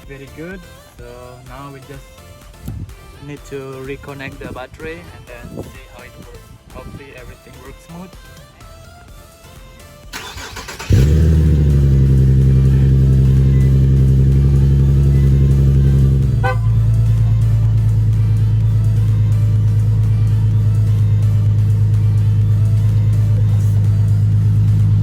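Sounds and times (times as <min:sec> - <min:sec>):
car engine idling: 0:10.2 - 0:25.0
starter cranking: 0:10.2 - 0:25.0.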